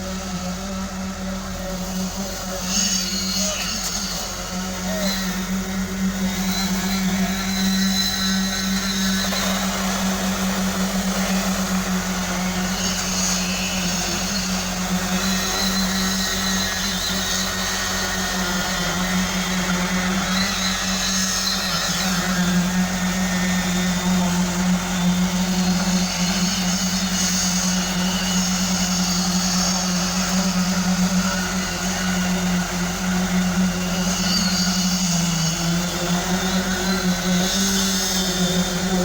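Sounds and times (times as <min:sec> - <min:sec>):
concrete machinery engine drone: 0:00.0 - 0:39.0.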